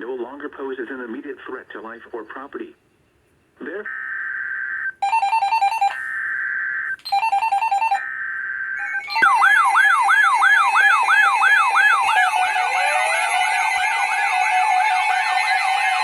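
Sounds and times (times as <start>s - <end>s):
alert tone with wailing sweep: 4.8s - 16.0s.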